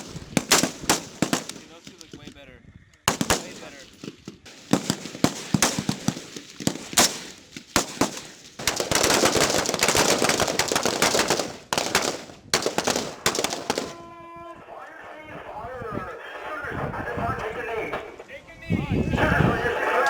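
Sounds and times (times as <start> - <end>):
rifle shots: 0.0 - 2.3, 3.1 - 14.0.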